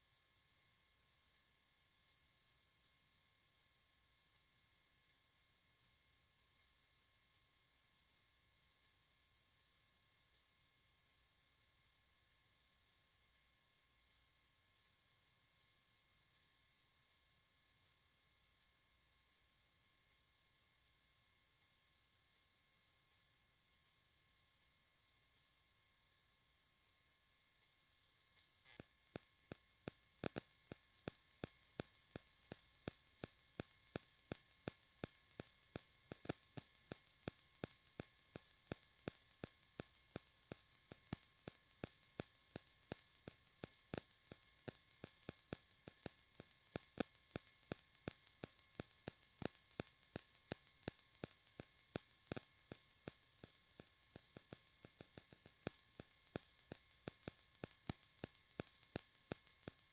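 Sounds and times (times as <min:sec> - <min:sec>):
faint electrical hum and hiss: 0:00.0 - 0:59.9
sharp static clicks: 0:28.4 - 0:59.9.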